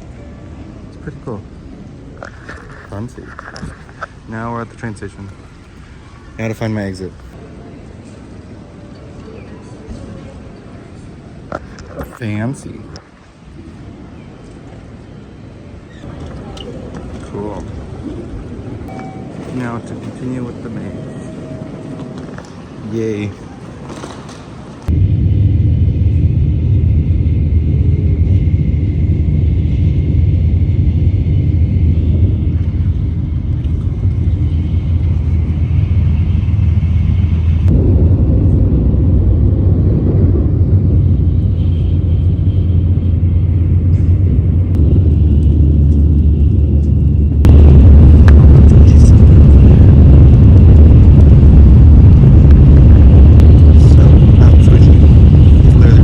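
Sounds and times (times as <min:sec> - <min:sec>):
train rumbling: 0:00.0 - 0:08.8, 0:14.7 - 0:56.0.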